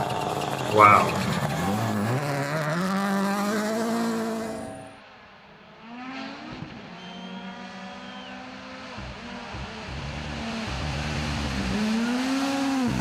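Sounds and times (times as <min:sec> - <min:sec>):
rally car engine accelerating: 0:00.0 - 0:04.9, 0:05.7 - 0:13.0
fainter engine revving: 0:00.0 - 0:05.0.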